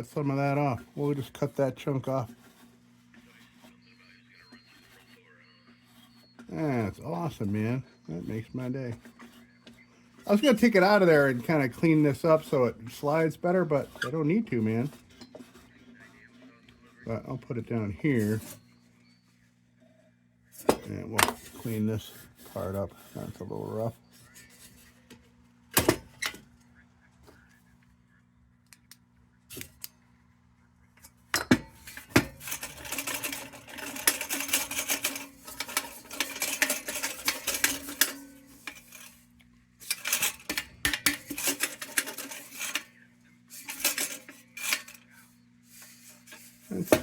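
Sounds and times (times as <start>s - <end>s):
low steady hum: 0.0s - 47.0s
metal scraping and scrubbing: 31.5s - 45.1s.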